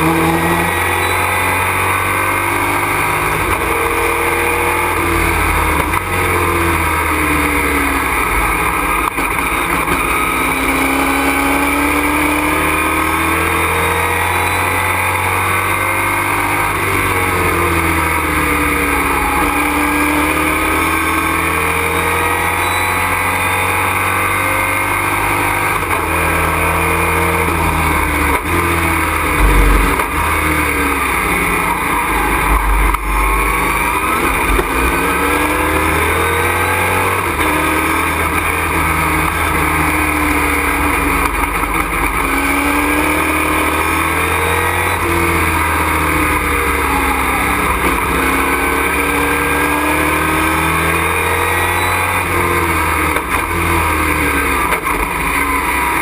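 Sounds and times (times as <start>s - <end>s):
truck engine revving: 0.0s - 56.0s
wind and road noise: 27.5s - 43.0s
low thuds: 29.2s - 35.2s.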